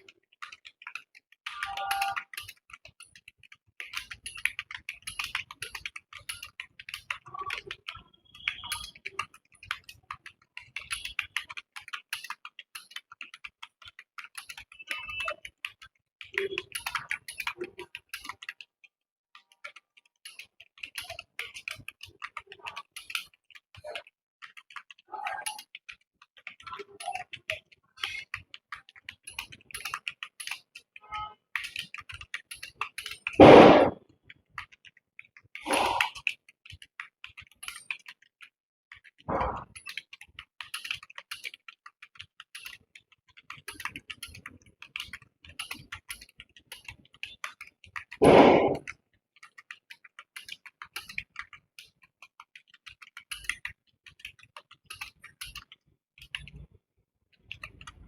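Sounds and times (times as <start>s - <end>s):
typing on computer keyboard: 0.0s - 56.7s, 57.4s - 58.0s.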